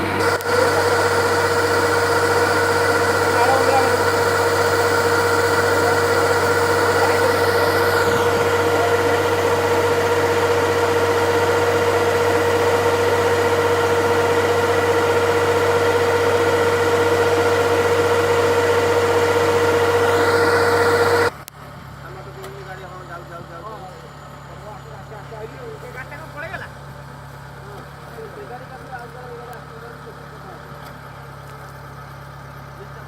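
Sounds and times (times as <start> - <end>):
high-pitched whine: 0.0 - 14.4, 15.0 - 21.3
combine harvester engine drone: 0.0 - 33.0.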